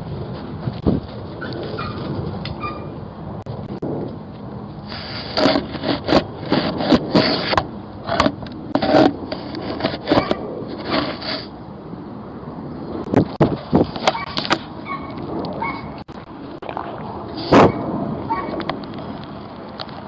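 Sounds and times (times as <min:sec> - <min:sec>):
goat scraping against microphone: 0:04.9 - 0:11.6.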